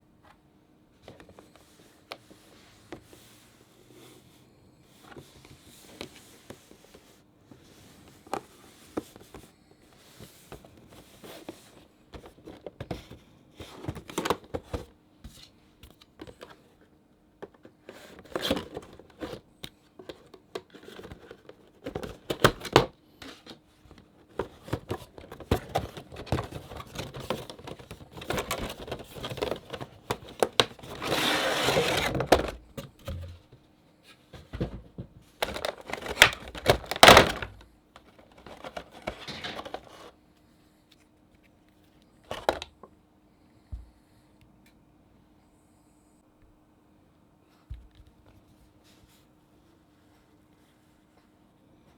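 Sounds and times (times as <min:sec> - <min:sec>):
plastic packaging crinkling: 0:35.4 - 0:39.9.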